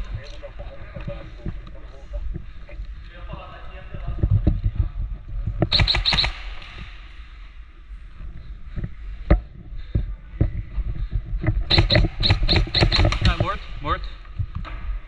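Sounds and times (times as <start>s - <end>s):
airsoft gun shots: 5.7s - 6.9s, 11.7s - 13.5s.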